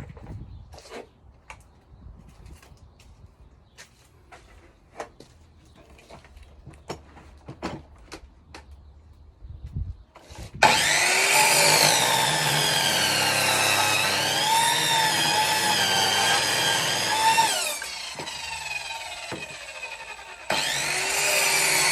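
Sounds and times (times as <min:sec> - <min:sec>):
chop saw cutting wood: 0:10.2 - 0:21.9.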